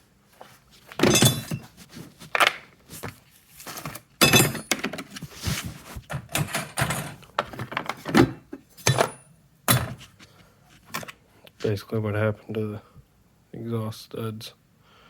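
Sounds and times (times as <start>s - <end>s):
metal parts and tools clunking: 0.9s - 2.6s, 3.7s - 5.2s, 6.1s - 10.1s, 10.8s - 11.2s.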